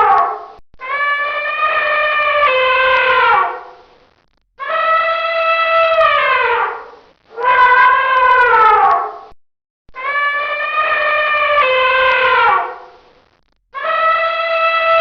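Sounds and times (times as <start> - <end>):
elephant trumpeting: 4.6 - 9.2, 10.0 - 12.9.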